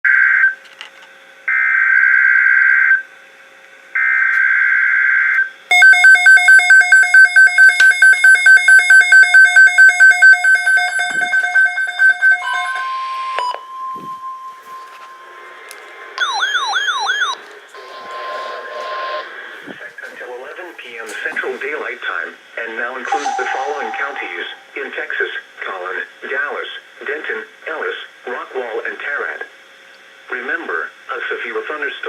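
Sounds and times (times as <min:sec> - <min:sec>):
electronic alarm beeping rapidly: 0:05.7 - 0:14.8, 0:16.2 - 0:17.4, 0:23.1 - 0:24.7
steady alert tone: 0:05.7 - 0:15.3, 0:23.1 - 0:24.8.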